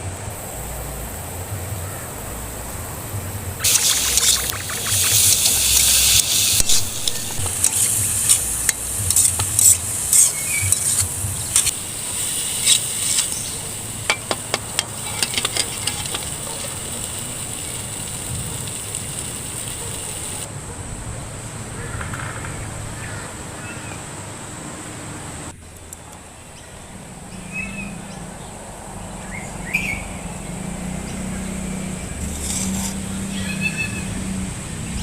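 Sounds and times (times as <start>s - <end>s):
utensil scraping pan: 3.6s - 20.4s, 32.2s - 33.1s
vegetables sizzling in pan: 3.6s - 20.5s.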